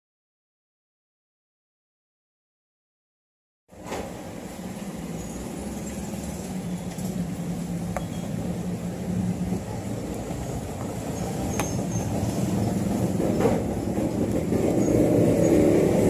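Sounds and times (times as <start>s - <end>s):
vehicle engine running: 4.4s - 16.0s.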